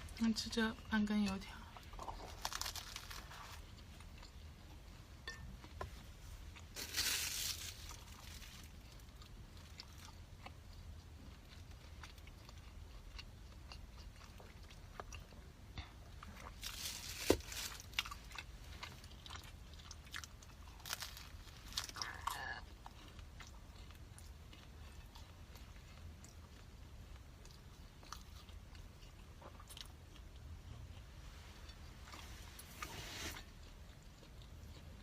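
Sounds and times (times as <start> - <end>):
crunchy biting and chewing: 1.9 - 4.4, 16.2 - 35.0.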